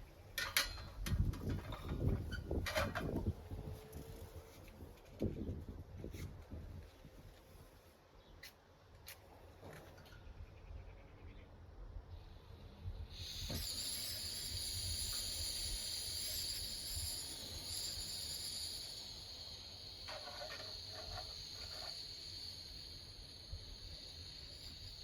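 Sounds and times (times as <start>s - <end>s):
insect chorus buzzing: 13.2s - 25.0s.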